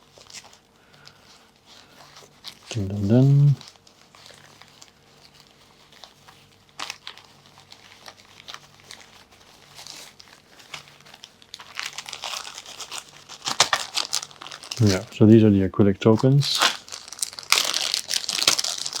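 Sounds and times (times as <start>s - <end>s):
plastic bag crinkling: 0.0s - 19.0s.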